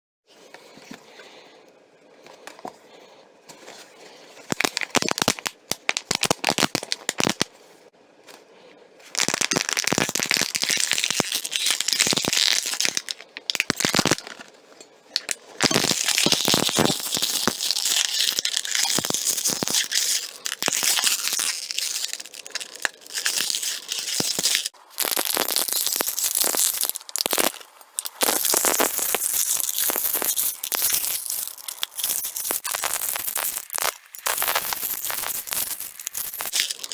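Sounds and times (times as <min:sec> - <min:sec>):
plastic bottle and can crinkling: 0:04.4 - 0:07.5, 0:09.1 - 0:14.5, 0:15.1 - 0:36.9.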